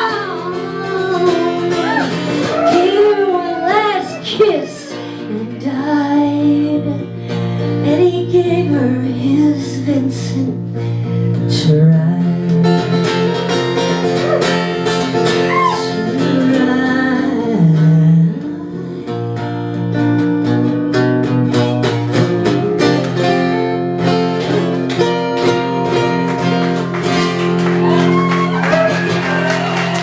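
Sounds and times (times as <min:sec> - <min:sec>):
person singing: 0:00.0 - 0:07.1
acoustic guitar strumming: 0:12.2 - 0:17.7, 0:18.3 - 0:30.0.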